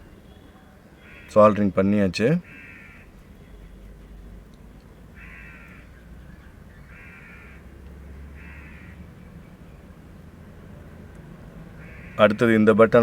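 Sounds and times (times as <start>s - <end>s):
bird calling: 0.0s - 1.6s, 2.4s - 4.0s, 4.9s - 7.7s, 8.4s - 9.9s, 11.8s - 12.5s.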